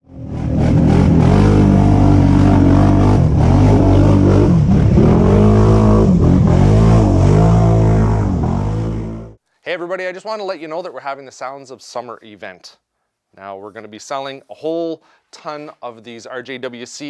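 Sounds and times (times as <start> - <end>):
loud engine revving: 0.0 - 9.4.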